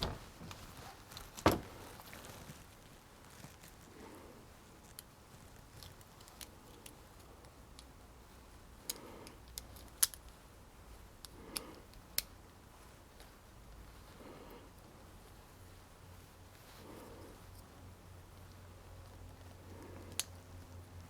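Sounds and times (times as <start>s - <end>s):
metal latch parts clicking: 0.0s - 0.6s, 1.3s - 1.8s.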